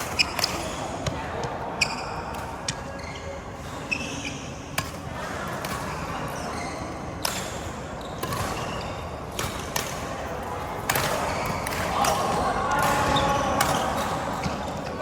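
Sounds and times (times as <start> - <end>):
shoes squeaking on court: 0.0 - 5.0, 5.7 - 9.7
rackets striking shuttlecock: 10.8 - 14.6.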